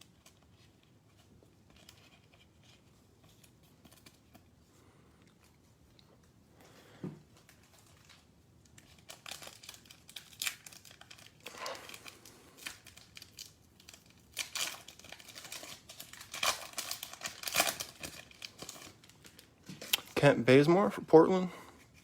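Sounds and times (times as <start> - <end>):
plastic wrapper crinkling and tearing: 7.4 - 20.9.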